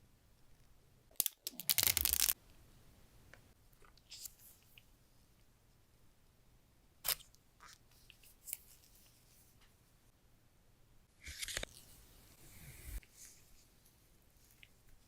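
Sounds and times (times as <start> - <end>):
wrap rustling and tearing: 1.2 - 2.4.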